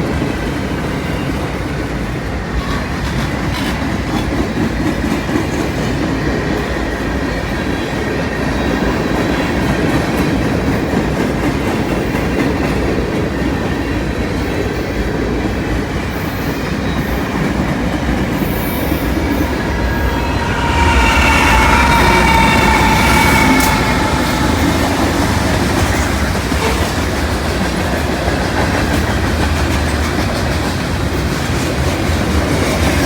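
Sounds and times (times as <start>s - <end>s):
train wheels rumbling on rails: 0.0s - 33.0s
faint wheel squeal: 18.4s - 26.9s.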